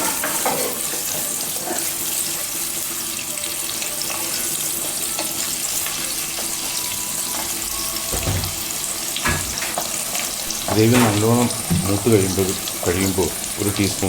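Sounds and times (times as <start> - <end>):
onions sizzling in oil: 0.0 - 14.0.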